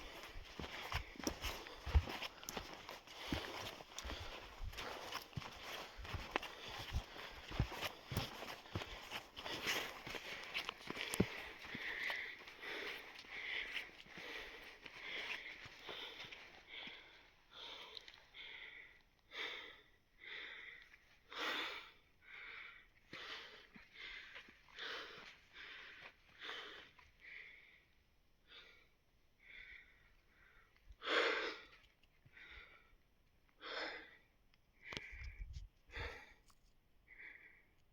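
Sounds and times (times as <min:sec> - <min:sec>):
man panting heavily: 0:00.0 - 0:27.8, 0:35.0 - 0:36.4, 0:37.1 - 0:37.7.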